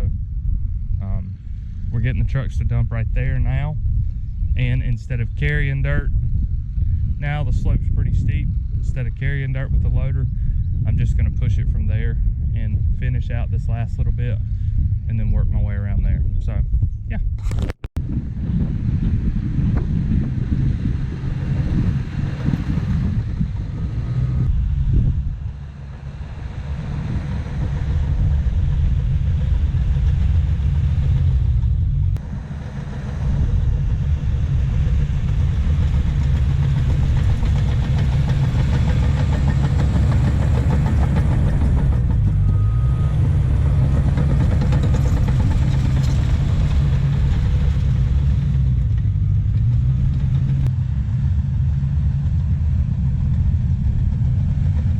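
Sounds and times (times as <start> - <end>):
bulldozer diesel engine running: 18.8 - 54.9.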